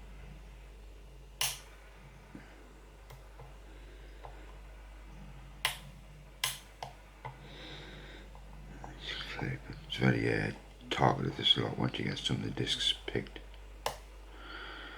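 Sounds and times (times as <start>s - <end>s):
lock pick metallic clicks: 1.4s - 1.7s, 5.6s - 6.8s.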